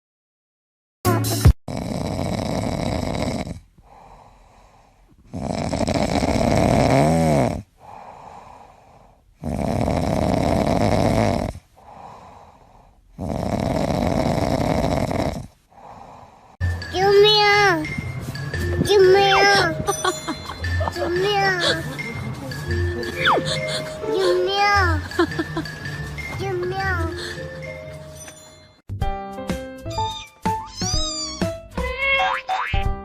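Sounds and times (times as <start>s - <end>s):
loud snoring: 1.7s - 4.4s, 5.2s - 16.4s
quiet breathing: 3.6s - 5.5s, 7.6s - 9.8s, 11.5s - 13.2s, 15.4s - 16.6s.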